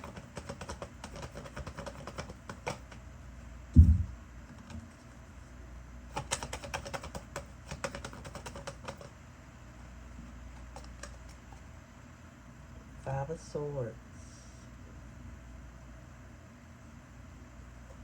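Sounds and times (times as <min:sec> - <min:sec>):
loud low thump: 0:03.8 - 0:04.2.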